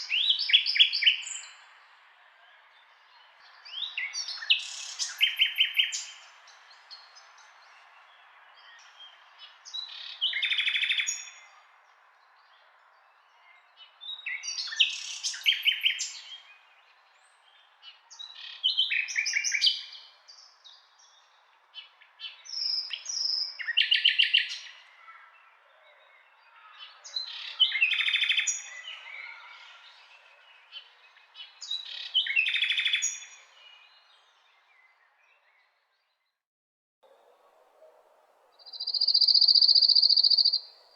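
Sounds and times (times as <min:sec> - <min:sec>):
songbird singing trills: 0:37.1 - 0:40.9.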